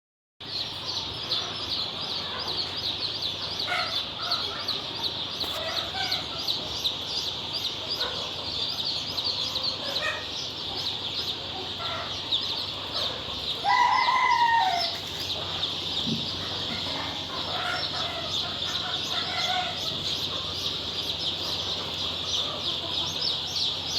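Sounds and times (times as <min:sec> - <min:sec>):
chicks peeping and chirping: 0:00.4 - 0:23.9
loud chick call: 0:11.6 - 0:23.7.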